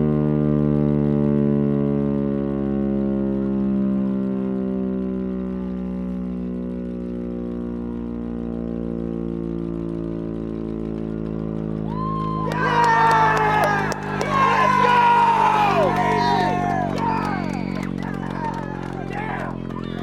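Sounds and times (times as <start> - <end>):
engine humming: 11.0 - 20.0.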